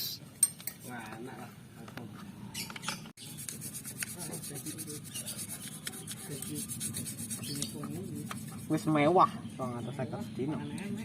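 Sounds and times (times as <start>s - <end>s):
hand scrubbing metal: 3.3s - 8.9s.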